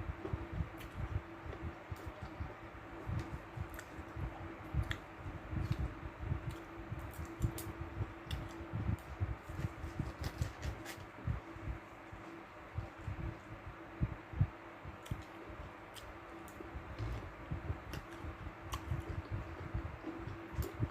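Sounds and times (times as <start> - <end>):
steady low hum: 0.0 - 20.9
soft chewing thumps: 16.0 - 20.9.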